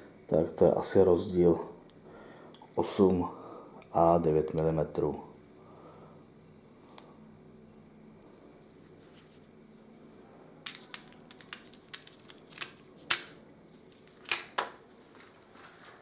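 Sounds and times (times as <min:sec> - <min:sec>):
small hard objects clicking: 0:10.7 - 0:13.4.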